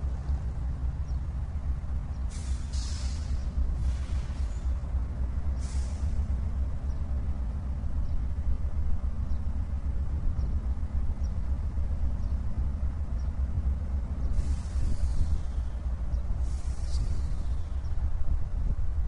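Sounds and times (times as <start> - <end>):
diesel locomotive engine rumbling: 0.0 - 19.0
short hiss: 2.3 - 4.6, 5.6 - 6.2.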